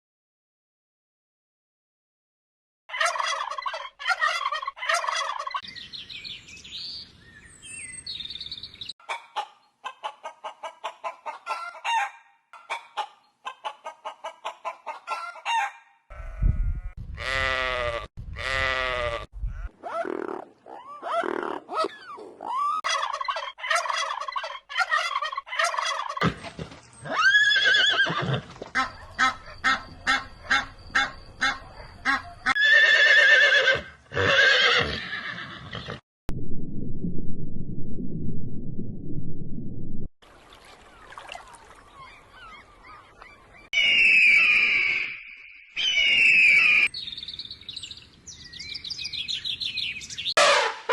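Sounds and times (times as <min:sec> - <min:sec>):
loud sweeping animal calls: 0:41.9 - 0:46.9.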